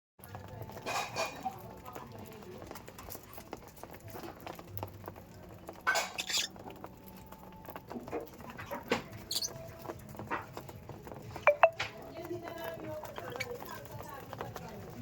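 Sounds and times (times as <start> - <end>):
budgerigars chirping: 5.9 - 6.6, 9.2 - 9.7.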